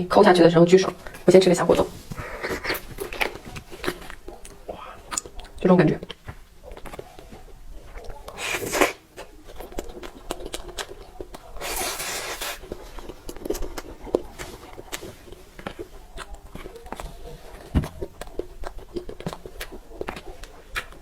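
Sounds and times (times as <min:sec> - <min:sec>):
chewing cake: 0:00.8 - 0:21.0.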